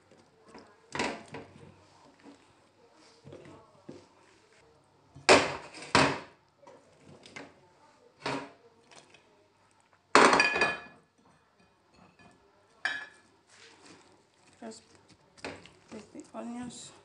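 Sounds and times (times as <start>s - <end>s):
dishes clattering: 10.2s - 13.2s.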